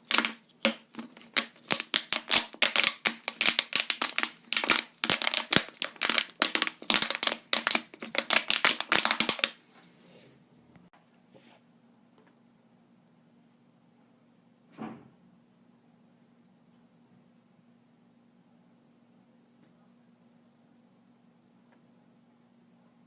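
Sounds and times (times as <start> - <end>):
rapid sharp clicks and taps: 0.0 - 9.6.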